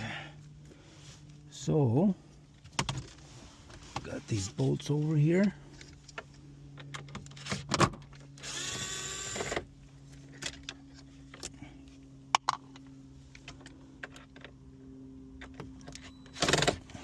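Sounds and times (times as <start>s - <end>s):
faint steady hum: 0.0s - 17.0s
power driver whirring: 8.3s - 9.7s.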